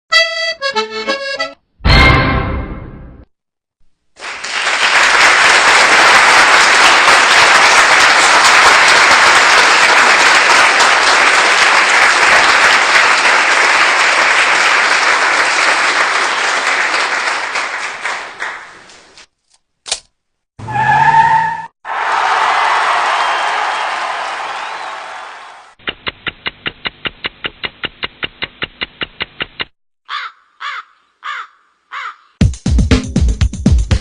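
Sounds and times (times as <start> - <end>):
crowd applause: 4.2 - 18.9, 21.8 - 25.8
sharp click: 19.5 - 20.2.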